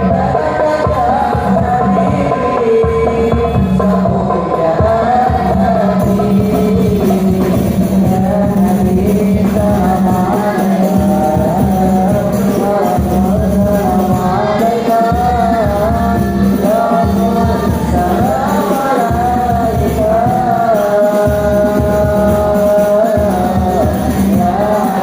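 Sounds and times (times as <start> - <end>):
child singing: 0.0 - 25.0.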